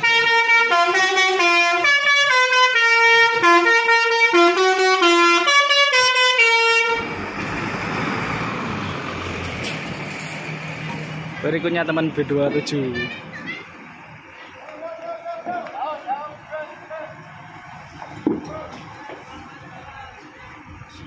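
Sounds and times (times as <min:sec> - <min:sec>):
musical bus horn tune: 0:00.0 - 0:07.2
bus engine rumble: 0:00.0 - 0:21.0
road noise: 0:00.0 - 0:21.0.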